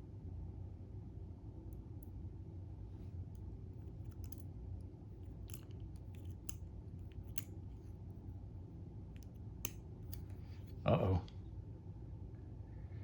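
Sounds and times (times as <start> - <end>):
steady low hum: 0.0 - 13.0
small metal clicks of lock parts: 3.8 - 4.5, 5.2 - 7.6, 9.2 - 10.8.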